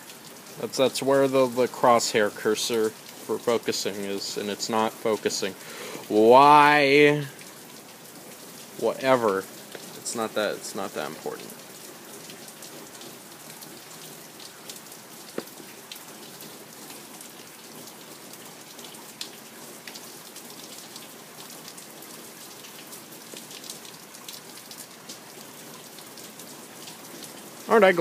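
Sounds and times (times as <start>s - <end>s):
steady rain falling: 0.0s - 28.0s.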